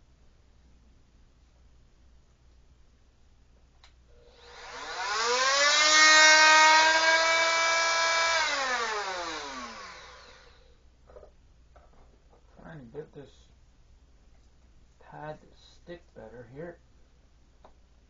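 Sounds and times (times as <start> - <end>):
oscillating tool motor whine: 4.2 - 10.7.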